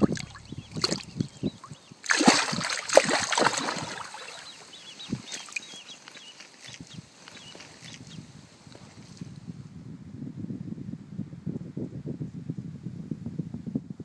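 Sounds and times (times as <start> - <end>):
water splashing and sloshing: 0.0 - 6.9
small birds chirping: 0.0 - 9.0.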